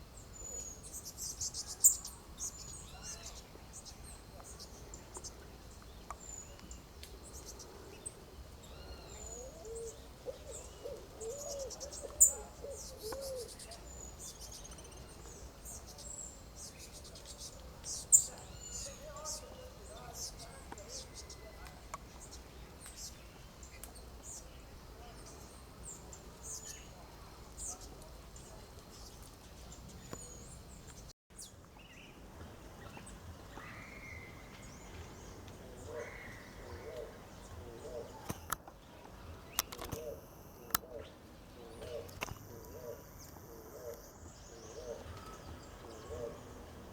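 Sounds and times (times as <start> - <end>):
outdoor background hiss: 0.0 - 46.9
birds chirping: 0.2 - 46.9
bird hooting: 39.9 - 46.6.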